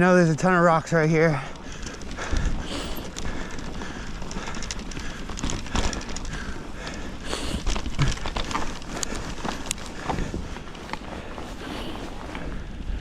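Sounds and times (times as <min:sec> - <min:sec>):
bike knocking and rattling: 0:00.2 - 0:13.0
bike tyres crunching in snow: 0:00.2 - 0:13.0.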